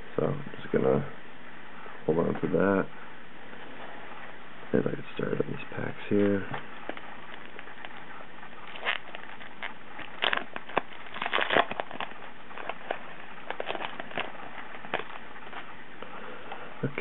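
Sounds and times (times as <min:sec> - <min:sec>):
card pack wrapper crinkling: 0:06.8 - 0:15.7.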